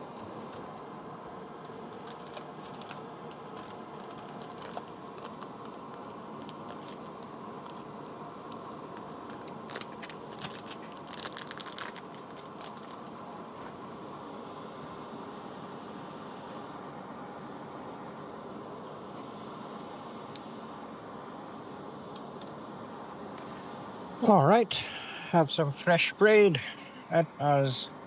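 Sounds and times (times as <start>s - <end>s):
small clicks and crackles: 0.1s - 0.9s, 1.5s - 13.8s
fan hiss: 13.2s - 28.0s.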